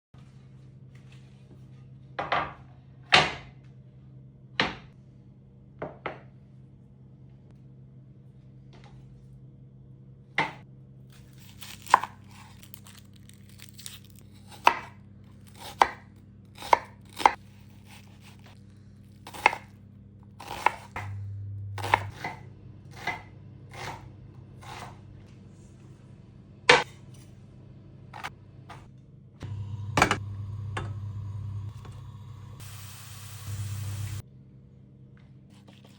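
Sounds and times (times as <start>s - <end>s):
knife chopping on cutting board: 14.6s - 18.6s, 19.3s - 19.7s, 20.4s - 21.2s, 21.8s - 25.0s.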